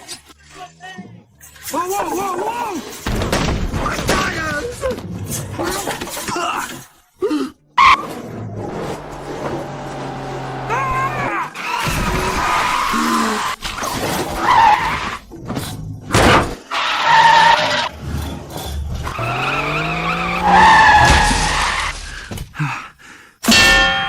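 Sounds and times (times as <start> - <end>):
tyres screeching: 7.8 - 13.6, 19.0 - 22.0
car engine revving: 8.4 - 11.4, 18.9 - 21.9.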